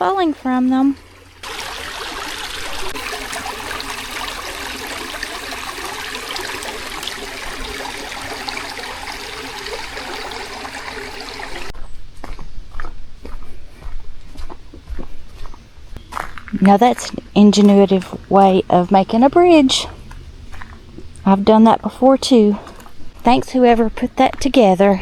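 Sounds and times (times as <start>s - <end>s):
water rushing over rocks: 1.3s - 11.7s.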